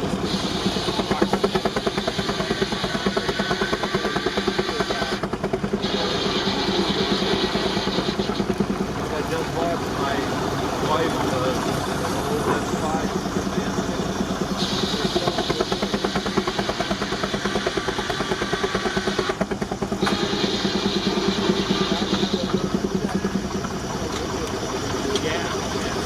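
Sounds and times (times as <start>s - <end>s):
steam engine exhaust beats: 0.0s - 26.0s
saw cutting wood: 5.8s - 8.5s, 14.6s - 22.8s.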